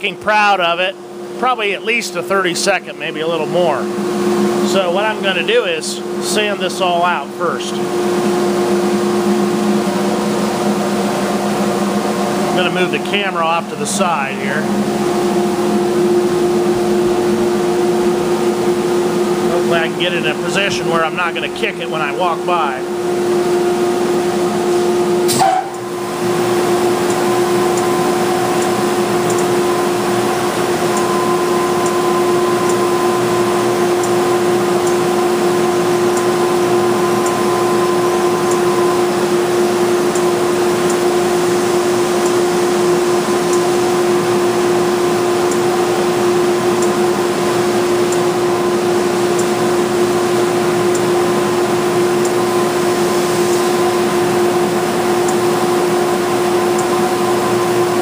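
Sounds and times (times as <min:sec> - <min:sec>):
belt sander humming: 0:01.0 - 0:58.0
faint regular ticks: 0:29.3 - 0:29.5.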